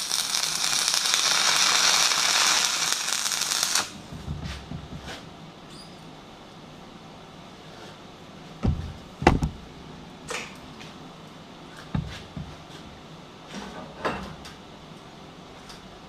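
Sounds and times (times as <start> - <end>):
metal gear knocks and clunks: 8.6 - 9.6.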